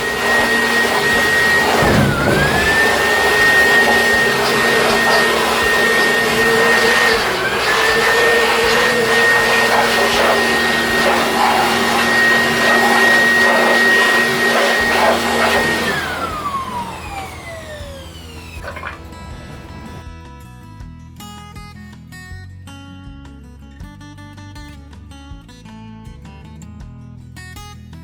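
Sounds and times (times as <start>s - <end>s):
rush of air: 0.0s - 15.9s
air blower whining: 0.0s - 20.0s.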